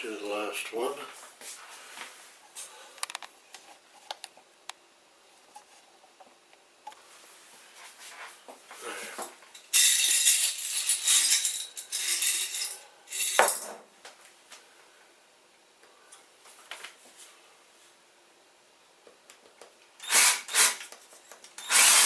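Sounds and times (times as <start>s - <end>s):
metallic clattering and scraping: 9.6s - 13.7s.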